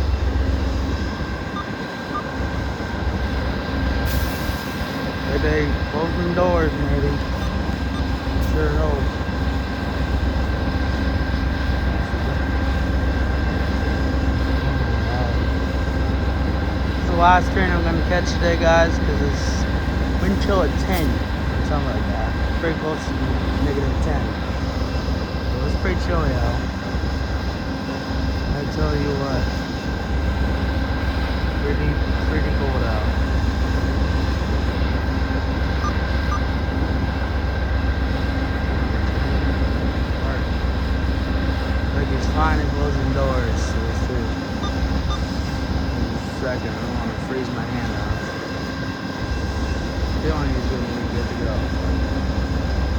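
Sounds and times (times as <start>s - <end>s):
wind buffeting microphone: 0.0s - 4.1s
diesel locomotive idling: 0.0s - 52.9s
faint steady whines: 0.0s - 52.9s
short faint beeps: 35.8s - 36.6s, 44.6s - 45.4s.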